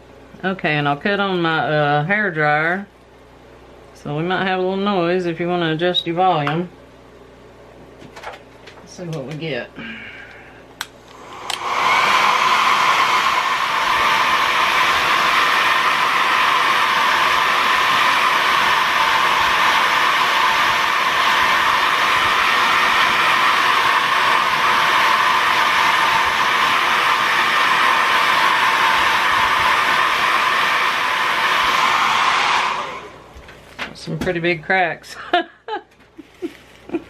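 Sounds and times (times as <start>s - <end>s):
hair dryer running: 9.0s - 33.6s.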